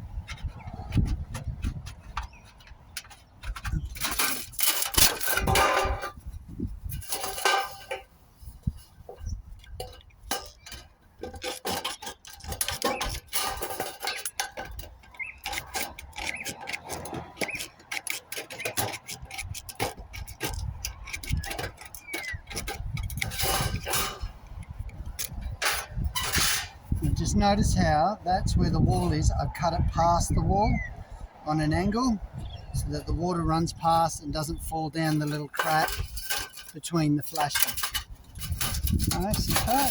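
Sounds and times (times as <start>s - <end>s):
metallic clicks and scrapes: 0.0s - 30.4s, 31.0s - 39.9s
snips cutting sheet metal: 11.4s - 24.3s.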